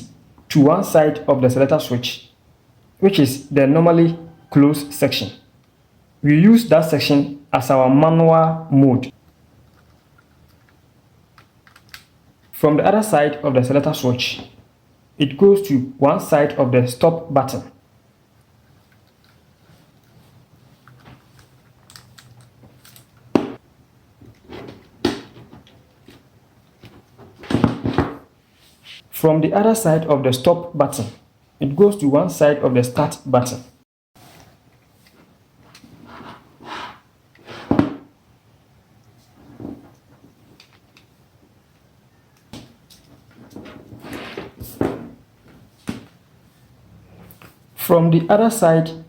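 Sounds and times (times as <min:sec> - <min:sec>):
wires rustling: 0:18.4 - 0:23.6.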